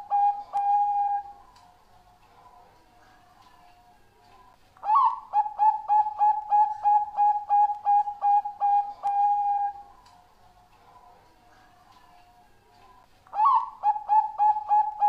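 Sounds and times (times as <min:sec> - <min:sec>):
dove cooing: 0:00.0 - 0:01.4, 0:04.8 - 0:10.0, 0:13.3 - 0:15.0.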